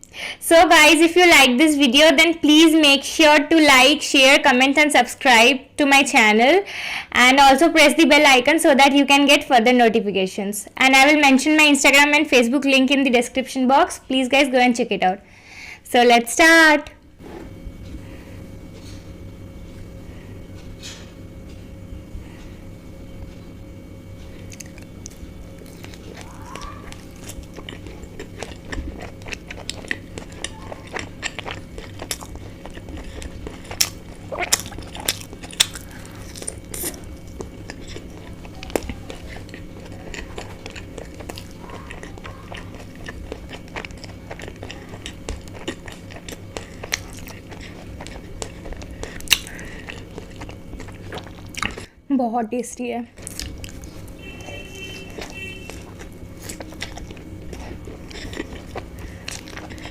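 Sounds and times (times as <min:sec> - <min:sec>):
biting and chewing: 0:23.2 - 0:51.9, 0:53.2 - 0:59.9.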